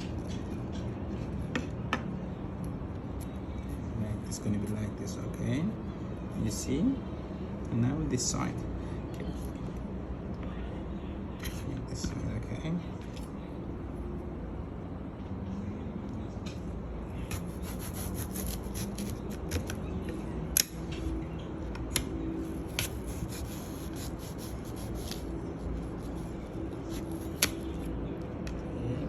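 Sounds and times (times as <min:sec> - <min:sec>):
knife cutting raw apple: 0:17.3 - 0:19.8.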